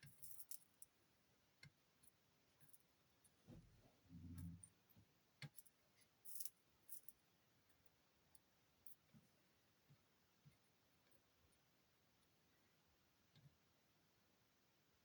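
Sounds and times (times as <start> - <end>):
brief low hum: 3.5 - 4.7
faint clicks and taps: 7.7 - 11.3.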